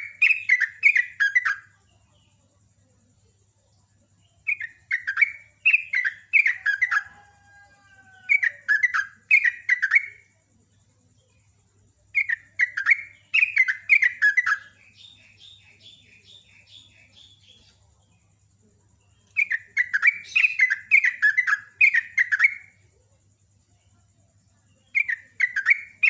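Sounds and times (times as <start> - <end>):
soft high chirps: 0.0 - 2.6, 11.0 - 23.1, 23.7 - 26.0.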